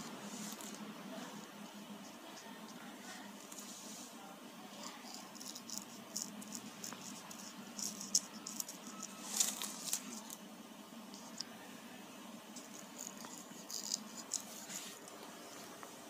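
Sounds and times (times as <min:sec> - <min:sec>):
colouring clicks and scratches: 0:04.8 - 0:10.4, 0:12.5 - 0:15.3.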